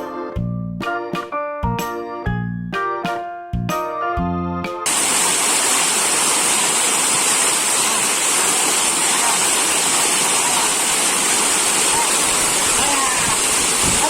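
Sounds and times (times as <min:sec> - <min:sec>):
piano music: 0:00.0 - 0:04.9
stream pouring over rocks: 0:04.9 - 0:14.0.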